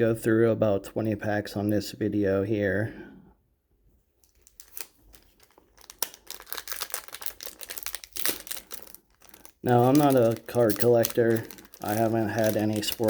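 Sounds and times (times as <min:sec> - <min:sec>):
wrapper tearing and crinkling: 0:04.2 - 0:13.0.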